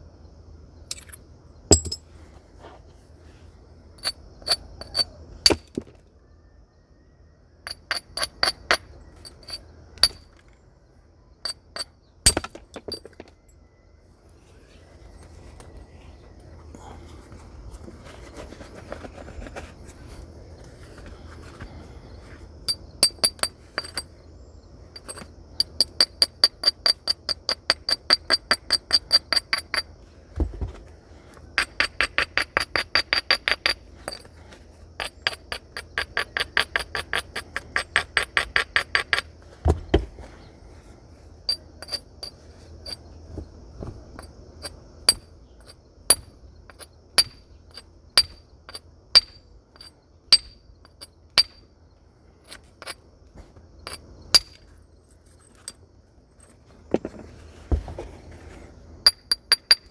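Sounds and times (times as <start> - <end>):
tool tapping flint: 0.9 - 2.0, 4.0 - 5.8, 7.6 - 10.4, 22.7 - 24.1, 25.0 - 30.8, 31.6 - 40.1, 41.5 - 43.0, 43.8 - 51.6, 59.1 - 59.9
dull thumps: 39.6 - 40.2.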